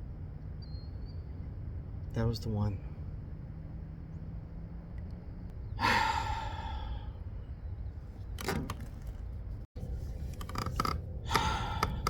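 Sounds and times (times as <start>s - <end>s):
man sighing heavily: 5.8s - 7.2s, 11.3s - 12.0s.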